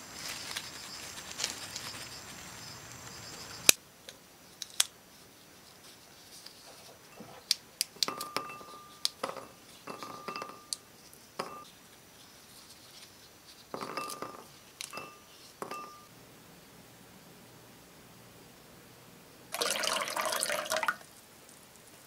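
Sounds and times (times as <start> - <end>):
tableware clinking: 7.1 - 7.4, 8.0 - 10.8, 11.4 - 11.7, 13.8 - 16.1.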